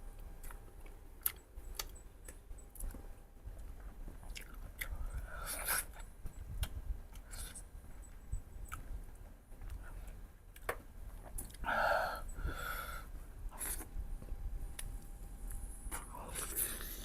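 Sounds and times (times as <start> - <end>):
chewing ribs: 0.1 - 7.7.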